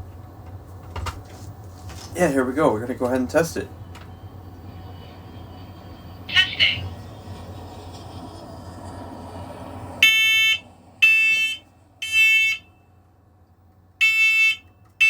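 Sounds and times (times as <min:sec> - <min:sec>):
smoke alarm beeps: 0:10.0 - 0:12.7, 0:14.0 - 0:14.7.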